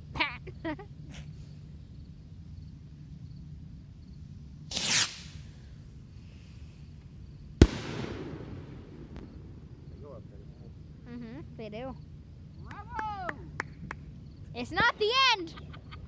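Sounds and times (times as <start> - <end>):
firework hissing rush: 4.6 - 6.9
firework bang: 7.6 - 10.5
rumbling echo: 7.6 - 11.0.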